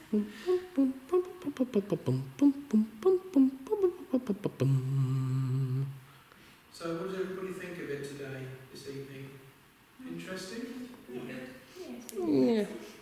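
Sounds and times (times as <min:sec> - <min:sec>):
person humming a tune: 0:00.0 - 0:06.0.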